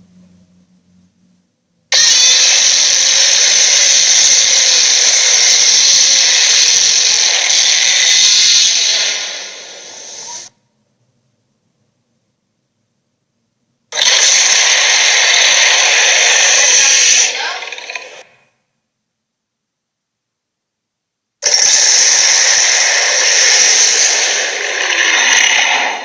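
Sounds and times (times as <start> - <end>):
loud steady hiss: 1.8 - 10.6, 13.9 - 18.4, 21.1 - 26.0.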